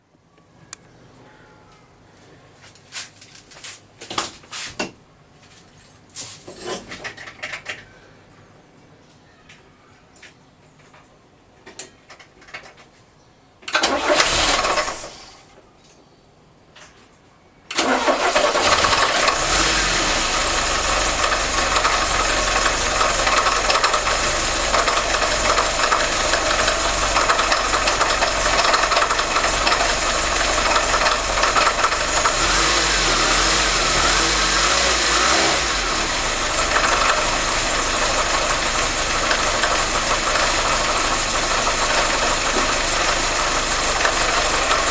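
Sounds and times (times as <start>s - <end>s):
car engine starting and running: 13.7s - 15.4s, 17.7s - 44.9s.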